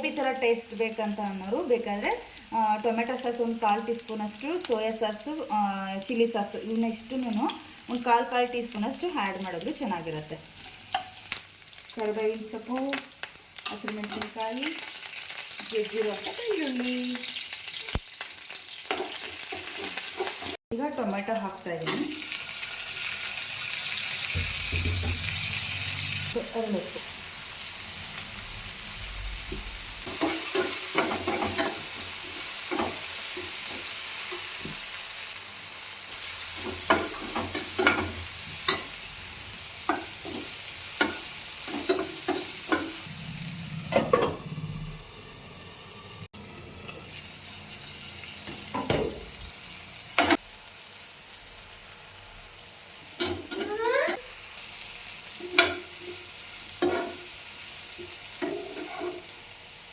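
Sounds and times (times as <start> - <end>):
vegetables sizzling in hot oil: 0.0 - 59.9
spatula scraping and tapping pan: 55.4 - 57.3, 58.0 - 59.3.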